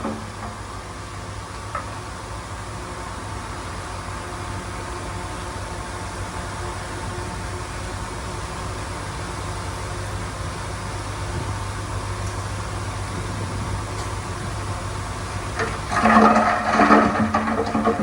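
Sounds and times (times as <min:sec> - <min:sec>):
diesel engine humming: 0:00.0 - 0:18.0.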